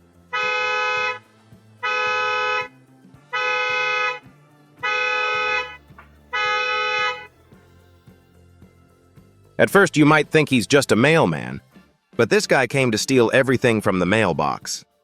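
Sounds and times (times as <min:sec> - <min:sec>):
car horn alarm blasts: 0:00.3 - 0:01.2, 0:01.8 - 0:02.7, 0:03.3 - 0:04.2, 0:04.8 - 0:07.3.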